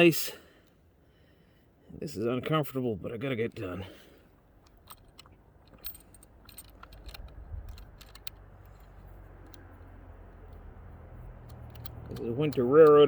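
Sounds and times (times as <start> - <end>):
metal hardware clinking: 4.4 - 13.0.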